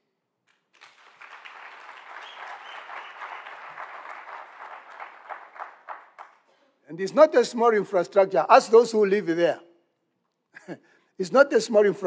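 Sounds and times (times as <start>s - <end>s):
audience applauding: 0.5s - 6.5s.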